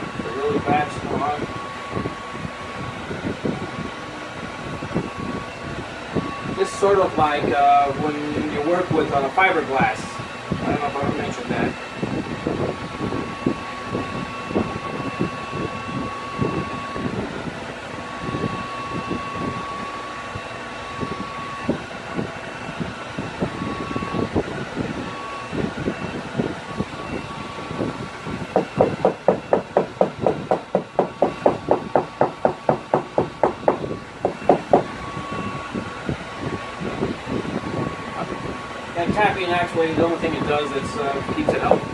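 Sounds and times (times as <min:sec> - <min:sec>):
knocks and handling on a seat: 0:28.5 - 0:35.0, 0:41.4 - 0:41.9.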